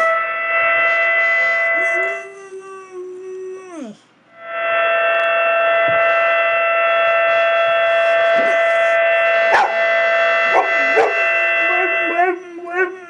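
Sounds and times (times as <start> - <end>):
dog howling: 0.0 - 4.0, 7.8 - 9.8, 10.5 - 13.0
tornado siren wailing: 0.0 - 13.0.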